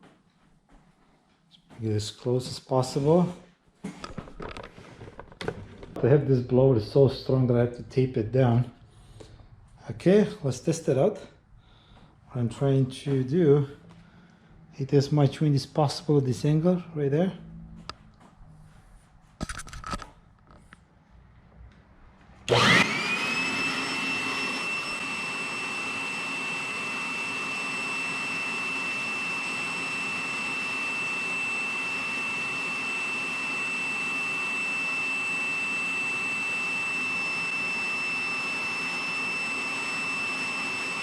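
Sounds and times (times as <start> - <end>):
blower motor rush of air: 22.5 - 41.0.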